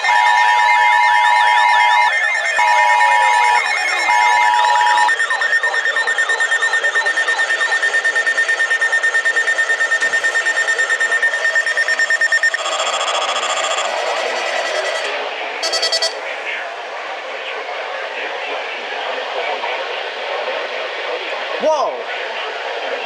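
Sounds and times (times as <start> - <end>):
rapid pulsing beep: 0.0 - 16.4
two-tone attention signal: 0.0 - 16.5
weather radio alert alarms: 0.0 - 16.7.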